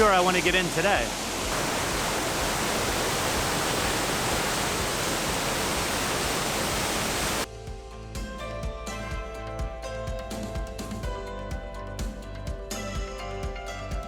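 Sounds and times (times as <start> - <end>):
waterfall roaring: 0.0 - 7.5.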